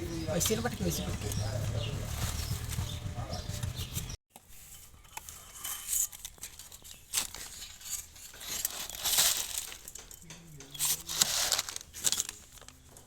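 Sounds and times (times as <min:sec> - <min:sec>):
steady low hum: 0:00.0 - 0:04.2
metal tools clicking and knocking: 0:05.1 - 0:13.0.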